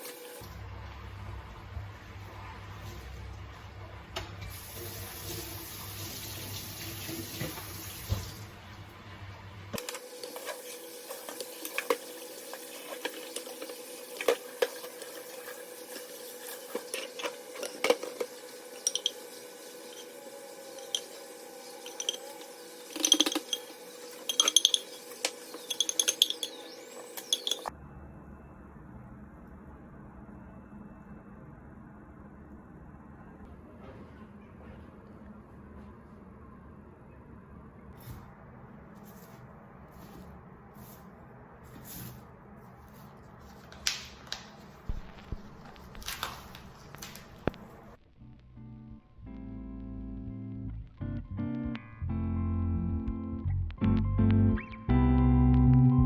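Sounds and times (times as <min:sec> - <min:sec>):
water running: 0:00.0 - 0:27.7
dishes and cutlery clinking: 0:15.9 - 0:19.3, 0:21.8 - 0:27.7.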